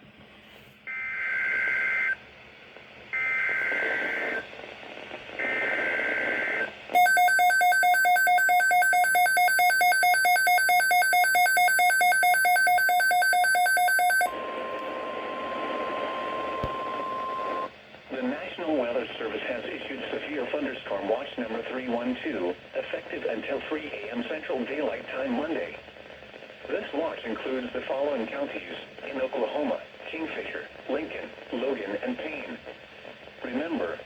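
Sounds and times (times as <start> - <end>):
harsh electronic alarm beeping: 7.0 - 14.4
steady warning alarm tone: 7.0 - 14.4.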